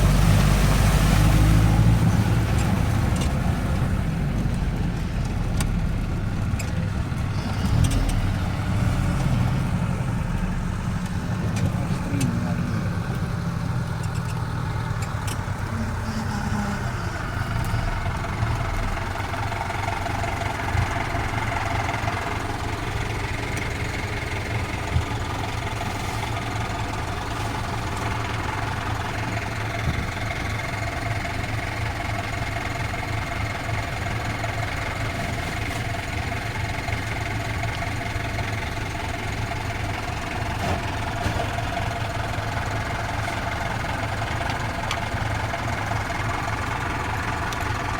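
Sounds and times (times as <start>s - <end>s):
steady engine whine: 0.0s - 47.9s
vehicle engine low drone: 0.0s - 47.9s.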